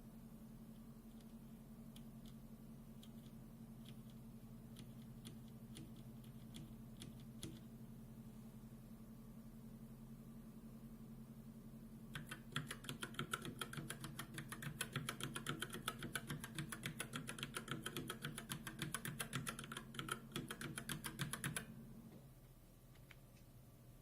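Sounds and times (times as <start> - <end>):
faint steady hum: 0.0 - 24.0
mechanical keyboard typing: 3.0 - 4.2, 4.8 - 7.6, 12.1 - 21.7.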